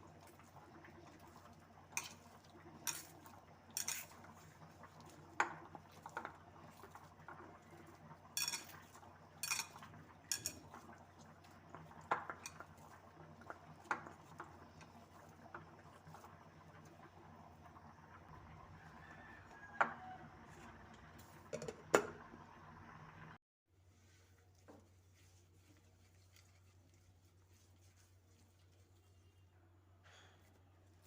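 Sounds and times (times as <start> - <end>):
kitchen utensils clinking: 2.0 - 4.3, 8.4 - 10.9.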